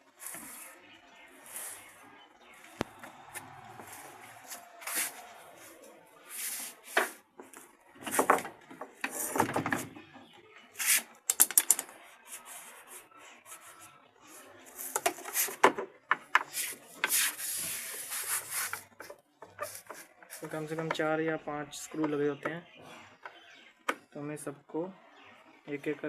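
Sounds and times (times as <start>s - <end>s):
tools clattering on plastic: 11.3s - 12.0s.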